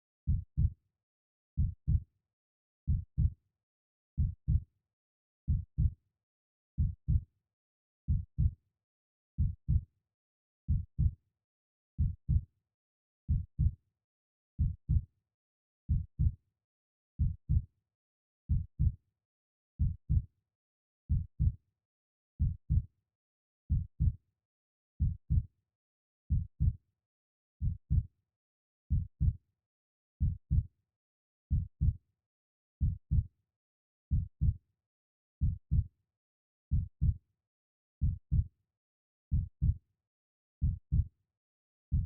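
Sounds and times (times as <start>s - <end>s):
slow heartbeat thumps: 31.5s - 32.0s, 34.1s - 34.6s, 35.4s - 35.8s.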